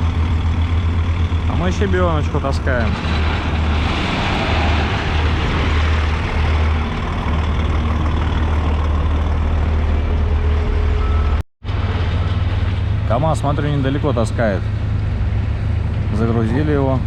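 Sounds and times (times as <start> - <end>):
diesel truck engine drone: 0.0 - 17.0
road rumble: 0.0 - 17.0.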